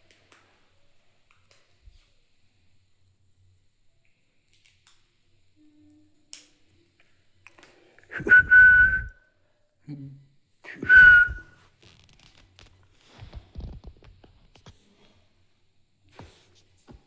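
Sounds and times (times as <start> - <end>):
short steady whistles: 8.1 - 9.2, 10.7 - 11.6.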